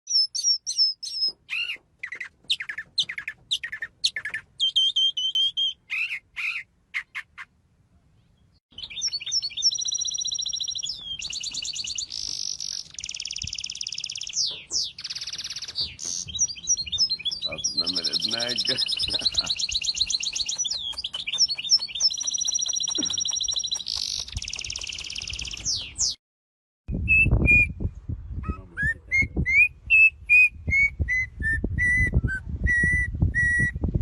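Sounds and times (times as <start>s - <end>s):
birds chirping and whistling: 0.1s - 7.5s, 8.3s - 26.2s, 26.9s - 34.0s
bird trilling song: 0.1s - 7.6s, 8.2s - 26.2s, 26.9s - 33.9s.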